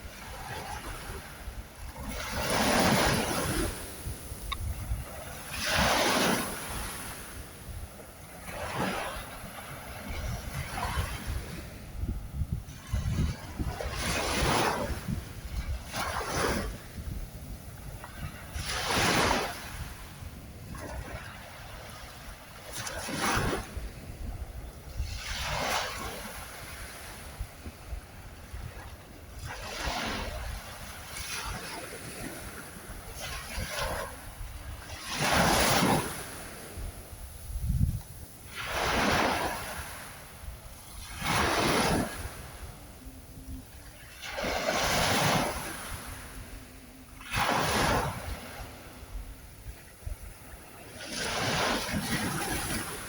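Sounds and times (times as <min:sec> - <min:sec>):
ocean waves washing ashore: 0:00.0 - 0:53.0
wind rumble on microphone: 0:00.0 - 0:53.0.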